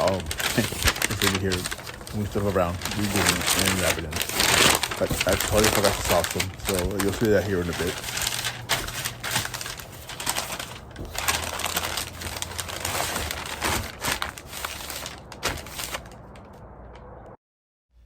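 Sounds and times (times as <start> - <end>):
wrapping material crinkling: 0.0 - 16.5.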